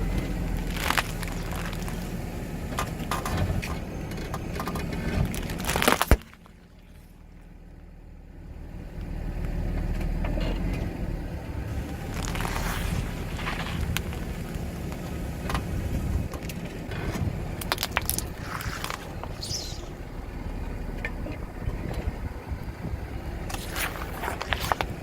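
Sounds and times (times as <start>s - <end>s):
car engine rumbling: 0.0s - 25.0s
tyres crushing objects: 17.1s - 20.0s, 23.5s - 25.0s.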